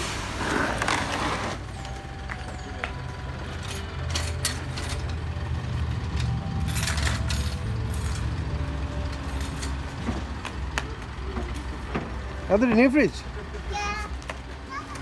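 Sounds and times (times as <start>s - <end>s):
vehicle engine idling: 0.0s - 15.0s.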